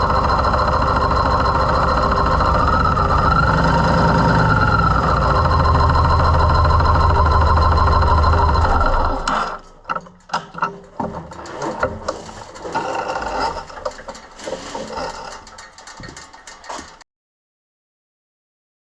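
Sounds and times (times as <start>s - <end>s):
motorcycle engine idling: 0.0s - 9.0s
mechanical clicks and knocks: 8.2s - 17.0s.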